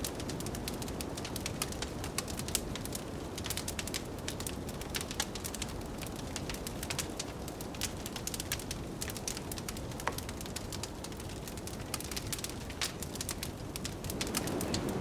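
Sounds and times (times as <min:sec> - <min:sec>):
wood fire crackling and popping: 0:00.0 - 0:15.0
blizzard wind rushing: 0:13.8 - 0:15.0.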